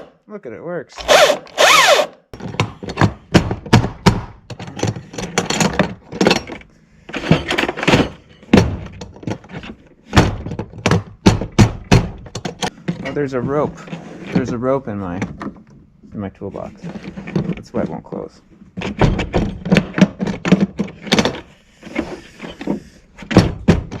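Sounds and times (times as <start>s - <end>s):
electric chainsaw motor spinning: 1.0s - 2.2s.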